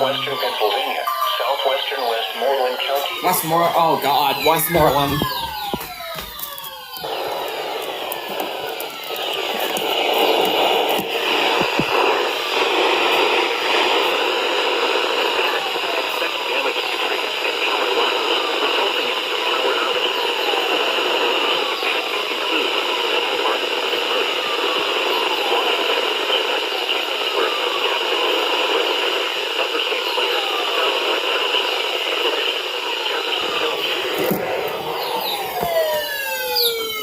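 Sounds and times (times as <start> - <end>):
radio static hiss: 0.0 - 37.0
faint falling whistles: 33.3 - 37.0.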